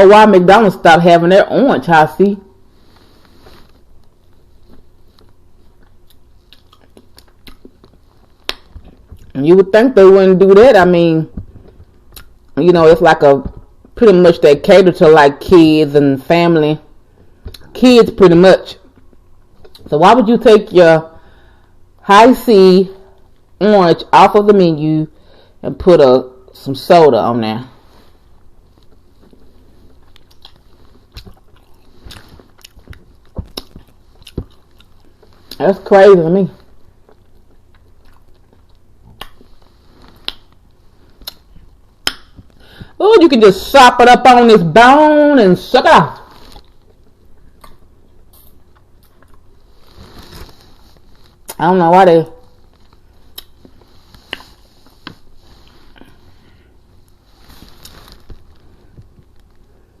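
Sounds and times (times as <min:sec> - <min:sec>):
wet chewing and lip smacks: 0:04.3 - 0:09.3, 0:28.7 - 0:35.6, 0:37.0 - 0:42.5, 0:46.6 - 0:49.5, 0:52.8 - 0:55.3.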